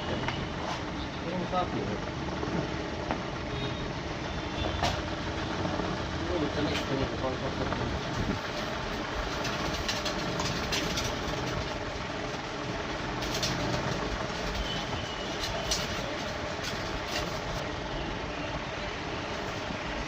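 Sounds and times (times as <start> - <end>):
workshop background noise: 0.0 - 20.0.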